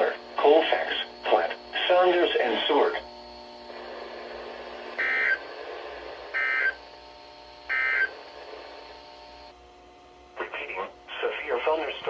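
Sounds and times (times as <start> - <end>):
faint steady hum: 0.0 - 12.0
harsh digital data bursts: 5.0 - 5.5, 6.3 - 6.8, 7.6 - 8.2.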